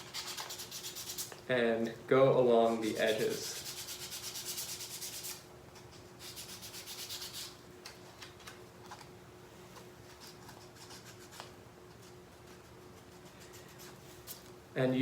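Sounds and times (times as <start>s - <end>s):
sandpaper scraping wood: 0.0s - 1.3s, 2.8s - 5.4s, 6.2s - 7.6s.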